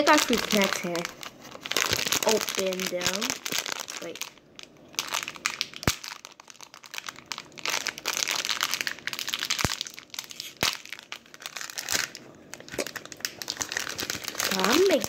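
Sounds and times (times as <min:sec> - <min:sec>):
plastic pouches crinkling: 0:00.0 - 0:15.0.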